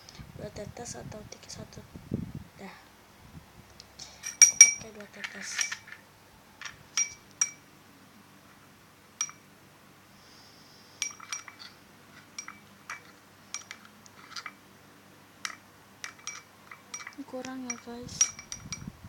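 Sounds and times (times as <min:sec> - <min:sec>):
stirrer clinking against container: 0:11.0 - 0:14.6, 0:15.5 - 0:18.9.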